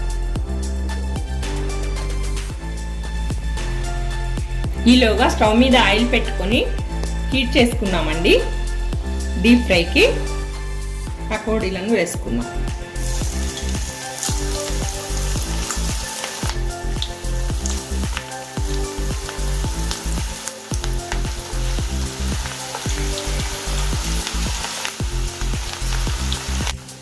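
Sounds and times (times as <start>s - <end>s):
background music with beat: 0.0s - 27.0s
food deep-frying in hot oil: 12.9s - 27.0s.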